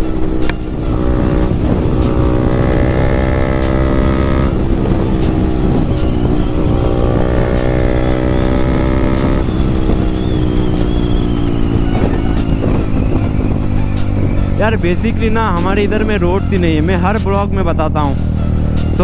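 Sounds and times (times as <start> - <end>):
motorcycle engine with loud exhaust: 0.0 - 17.4.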